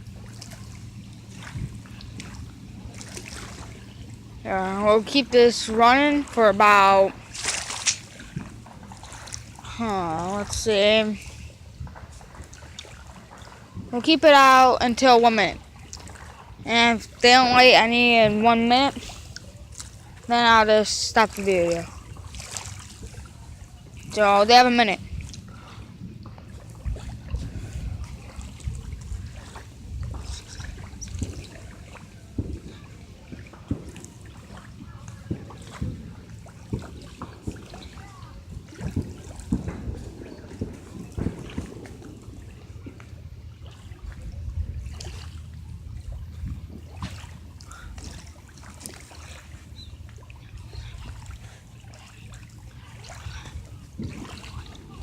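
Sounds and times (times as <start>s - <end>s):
motorboats rumbling: 0.0s - 55.0s
water lapping: 0.0s - 55.0s
faint crackles: 15.3s - 44.1s.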